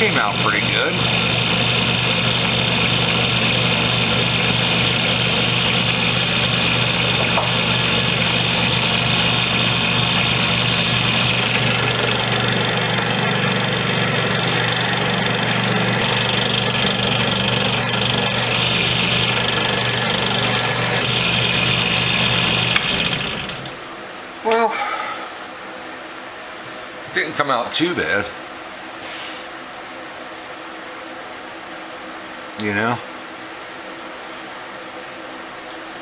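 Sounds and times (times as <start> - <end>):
wire wheel brushing rust: 7.0 - 23.6.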